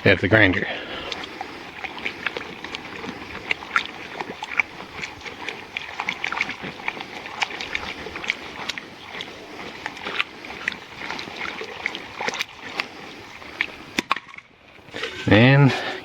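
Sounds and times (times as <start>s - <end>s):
stones clattering in water: 13.9s - 15.5s.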